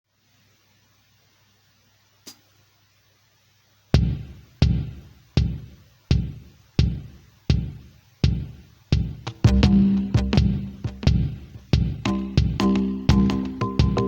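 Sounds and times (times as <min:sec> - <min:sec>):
electronic drum hits: 0:04.0 - 0:14.0.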